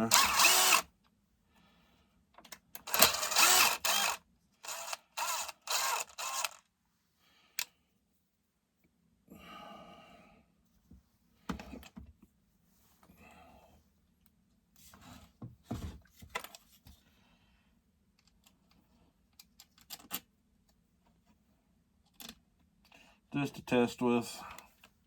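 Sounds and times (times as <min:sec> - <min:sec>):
mechanical tool noise bursts: 0:00.0 - 0:00.9, 0:02.8 - 0:06.6.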